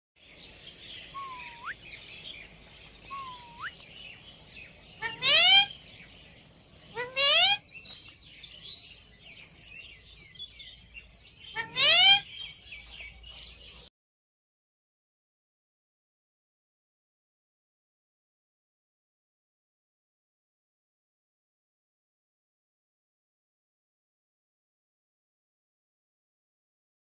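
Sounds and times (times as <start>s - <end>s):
small birds chirping: 0.2s - 13.9s
parakeets screeching: 1.1s - 1.8s, 3.1s - 3.8s, 5.0s - 5.9s, 6.9s - 7.8s, 11.4s - 12.4s.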